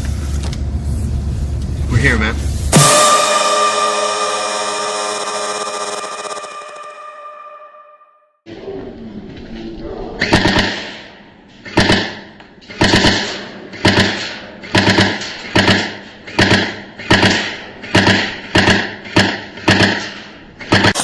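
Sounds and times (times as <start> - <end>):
airsoft gun shots with echo: 10.2 - 21.0.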